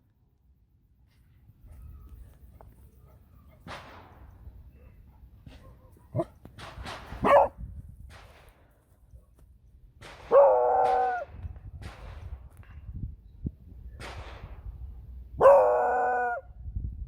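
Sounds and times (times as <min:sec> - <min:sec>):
distant gunshots: 0:03.6 - 0:04.3, 0:10.0 - 0:11.2
dog yelping and barking: 0:07.2 - 0:07.5, 0:15.4 - 0:16.4.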